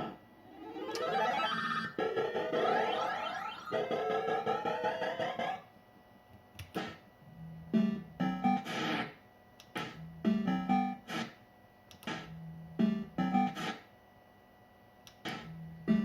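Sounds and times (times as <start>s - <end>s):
fruit machine electronic sound loop: 0.0s - 5.7s.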